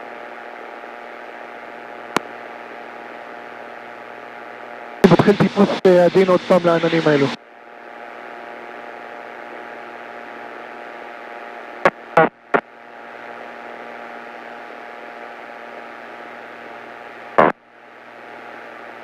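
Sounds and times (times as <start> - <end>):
radio crackles: 0.0 - 19.0
airplane engine and cabin drone: 5.0 - 11.8.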